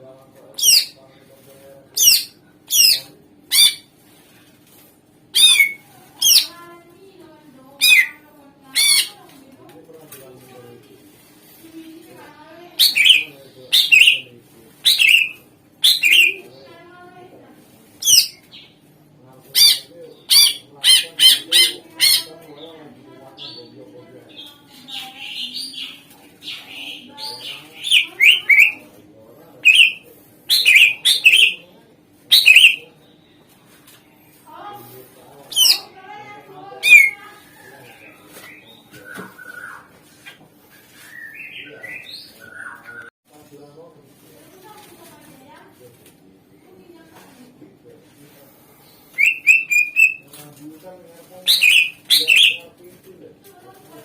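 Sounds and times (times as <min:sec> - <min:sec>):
bird giving sharp downward calls: 0:05.4 - 0:06.5, 0:07.8 - 0:09.2, 0:12.8 - 0:14.2, 0:14.8 - 0:16.4, 0:25.2 - 0:28.8, 0:29.6 - 0:31.6, 0:32.3 - 0:32.8, 0:36.8 - 0:37.2, 0:49.2 - 0:50.2, 0:51.5 - 0:52.6.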